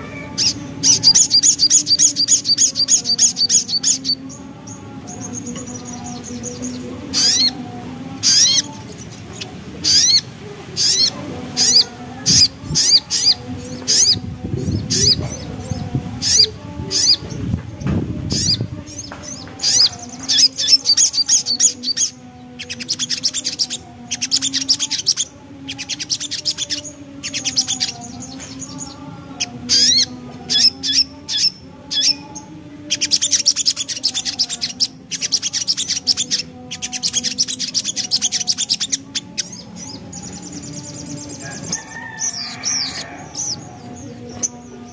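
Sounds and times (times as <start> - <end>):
bird chattering trill: 5.1 - 17.2, 29.4 - 32.3.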